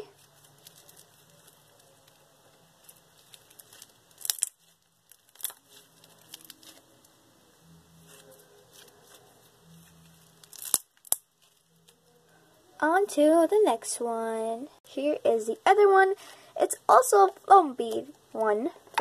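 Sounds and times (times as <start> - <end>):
slime crunching and popping: 0.2 - 7.2, 10.1 - 11.6.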